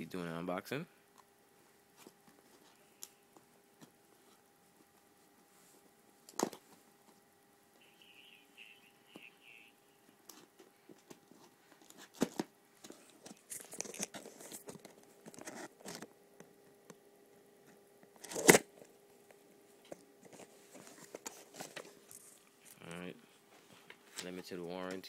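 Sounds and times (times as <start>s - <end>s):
packaging tearing and crinkling: 13.2s - 16.0s.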